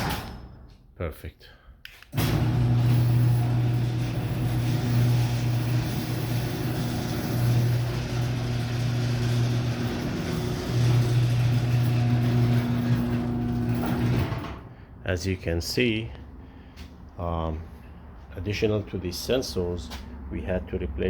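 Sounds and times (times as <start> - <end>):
garage door opener motor humming: 2.1 - 14.8.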